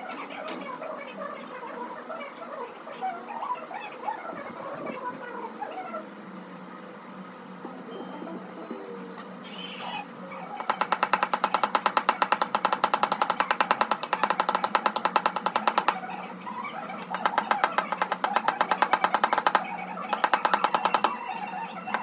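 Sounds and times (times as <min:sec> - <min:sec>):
hammer tapping on sheet metal: 0:10.6 - 0:16.1, 0:17.1 - 0:21.2.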